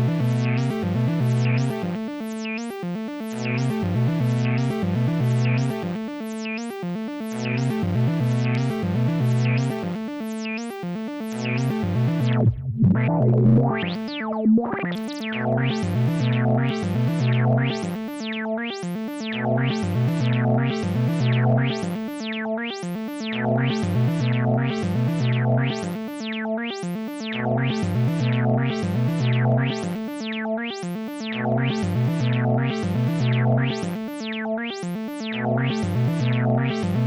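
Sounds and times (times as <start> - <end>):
low synth bass line: 0.0 - 2.2, 2.9 - 6.3, 6.9 - 10.2, 10.9 - 18.2, 19.0 - 22.1, 23.0 - 26.1, 27.0 - 30.2, 31.0 - 34.2, 35.0 - 37.0
synthesizer sequenced pattern: 0.0 - 37.0.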